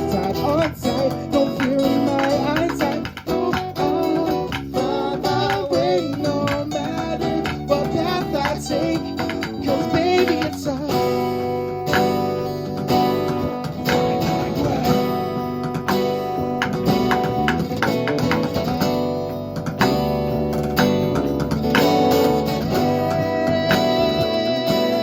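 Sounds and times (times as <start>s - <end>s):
guitar: 0.0s - 25.0s
live band playing instrumental: 5.7s - 25.0s.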